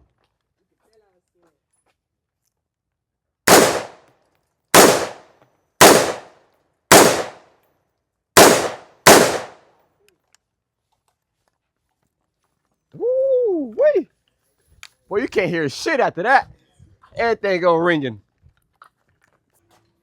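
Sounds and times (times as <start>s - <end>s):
gunshots with echo: 3.5s - 4.0s, 4.8s - 6.3s, 6.9s - 7.4s, 8.4s - 9.6s.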